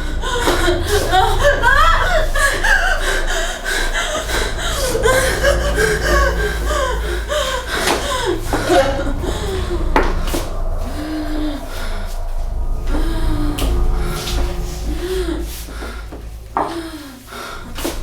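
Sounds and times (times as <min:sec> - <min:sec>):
person gasping and chuckling: 0:00.0 - 0:12.6
low steady hum: 0:00.0 - 0:18.0.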